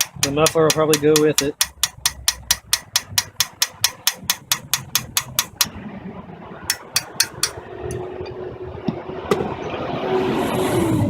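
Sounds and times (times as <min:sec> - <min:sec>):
hammer tapping on bolt: 0:00.0 - 0:05.7, 0:06.7 - 0:07.6.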